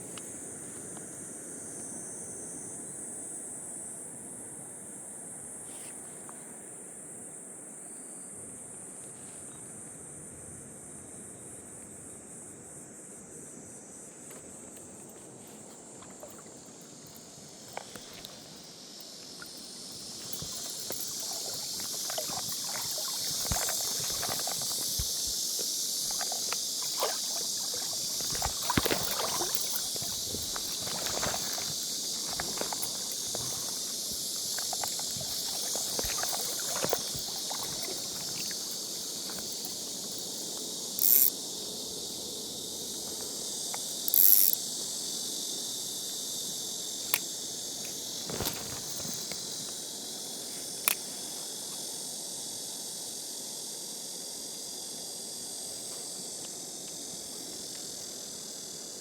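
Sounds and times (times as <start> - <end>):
high thin insect drone: 0.0 - 59.0
legs sloshing through stream: 15.5 - 41.3, 48.1 - 49.7
rushing water: 19.4 - 40.6.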